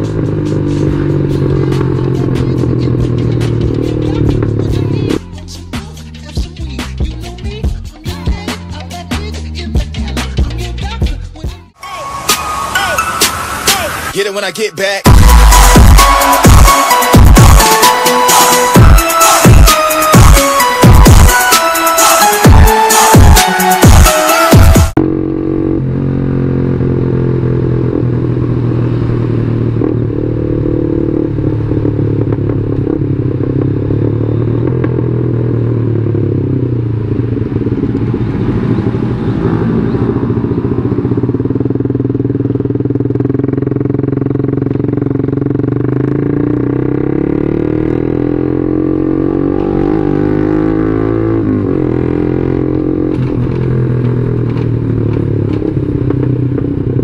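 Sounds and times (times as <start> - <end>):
motorcycle engine revving: 0.0 - 11.1, 23.2 - 57.0
wind and road rumble: 24.9 - 47.0, 47.8 - 57.0.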